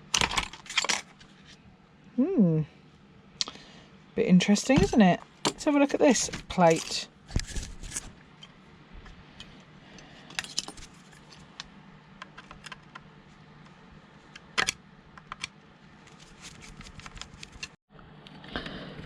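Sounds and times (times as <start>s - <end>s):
metal parts clattering: 0.2s - 1.1s, 10.3s - 11.4s
small metal parts clinking: 10.3s - 11.4s.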